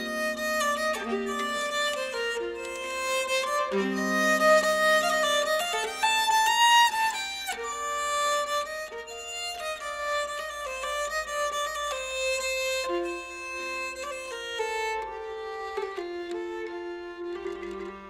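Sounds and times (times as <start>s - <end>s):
bowed keyed fiddle melody: 0.0s - 18.0s.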